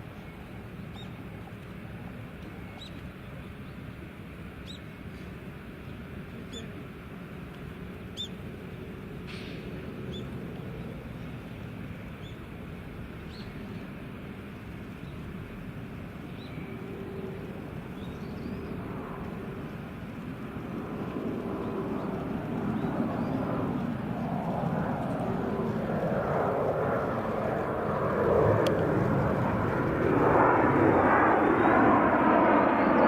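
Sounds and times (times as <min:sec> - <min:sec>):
jet aircraft engine: 0:00.0 - 0:33.0.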